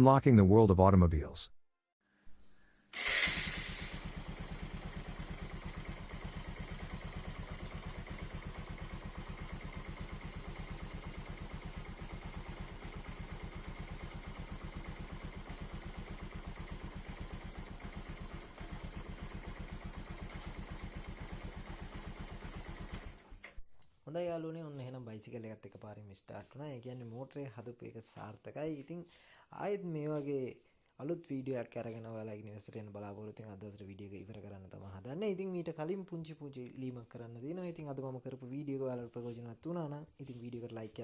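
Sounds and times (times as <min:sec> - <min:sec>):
electric starter cranking: 0:02.9 - 0:14.1
motorcycle engine idling: 0:03.0 - 0:23.4.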